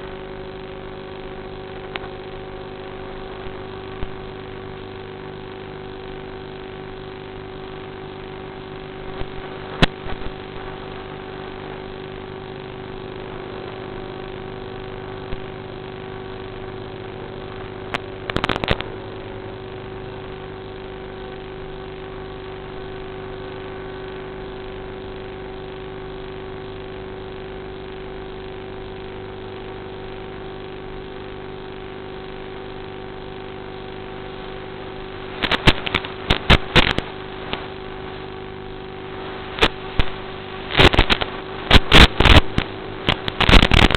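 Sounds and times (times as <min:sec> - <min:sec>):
brief crackles: 0:09.1 - 0:10.6, 0:17.9 - 0:18.9, 0:35.3 - 0:38.3, 0:39.5 - 0:43.9.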